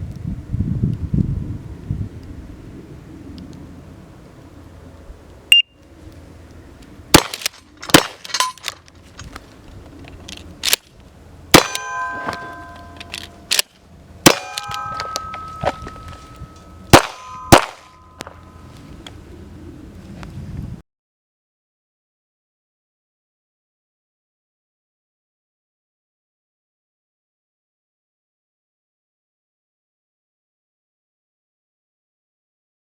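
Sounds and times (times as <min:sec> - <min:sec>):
gunshots: 0:07.1 - 0:08.4, 0:11.5 - 0:13.6, 0:14.2 - 0:16.1, 0:16.9 - 0:17.9
ringing metallic tone: 0:11.5 - 0:13.6, 0:14.3 - 0:18.7.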